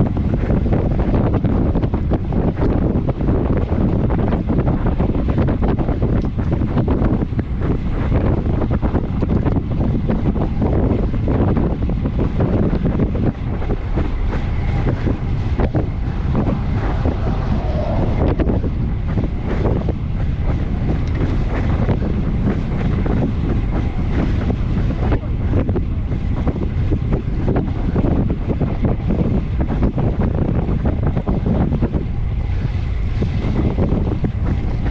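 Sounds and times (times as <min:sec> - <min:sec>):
wind buffeting microphone: 0:00.0 - 0:34.9.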